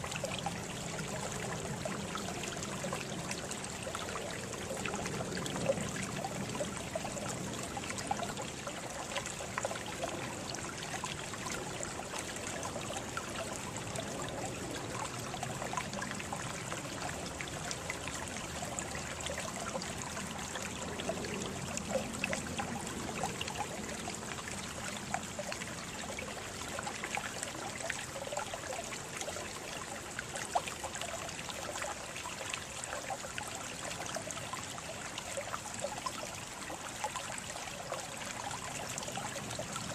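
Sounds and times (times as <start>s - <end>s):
small water splashes: 0.0s - 39.9s
water trickling: 0.0s - 39.9s.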